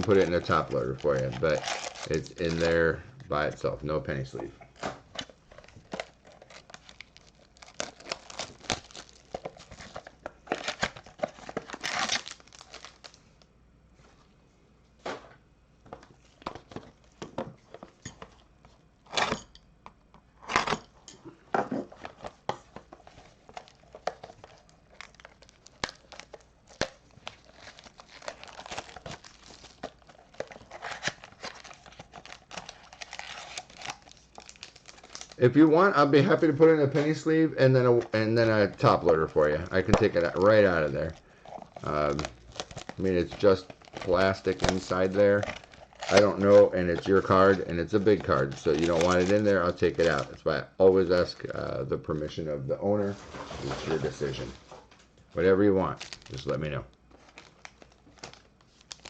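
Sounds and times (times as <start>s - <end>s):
wrapper tearing and crinkling: 0.0s - 2.8s, 4.8s - 13.2s, 23.0s - 35.6s, 37.0s - 50.4s, 55.9s - 59.0s.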